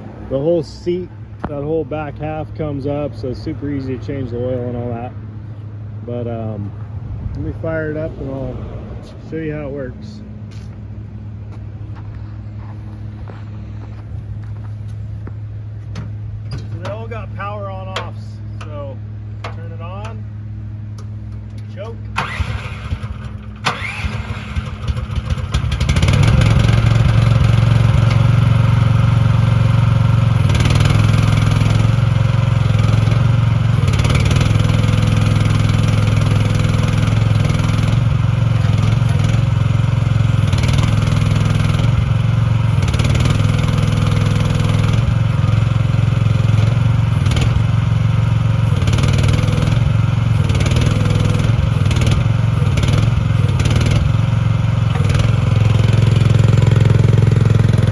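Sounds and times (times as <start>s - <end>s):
small petrol engine starting and running: 22.2s - 57.9s.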